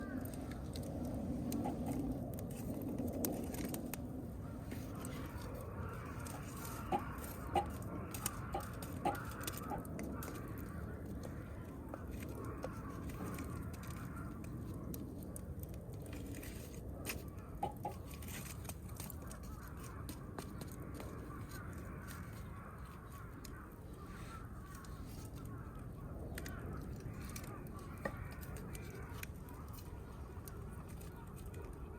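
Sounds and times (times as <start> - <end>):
bird calling: 4.8 - 11.8.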